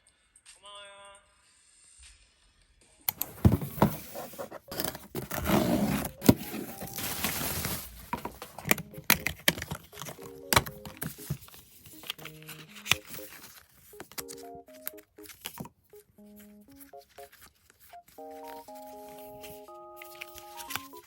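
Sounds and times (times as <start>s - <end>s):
handling clicks and knocks: 3.1s - 15.8s
packaging rustling and tearing: 3.2s - 16.0s, 16.7s - 21.0s.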